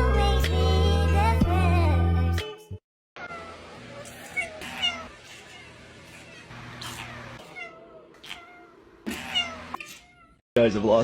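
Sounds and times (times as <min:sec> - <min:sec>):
cat meowing: 0:03.2 - 0:10.4.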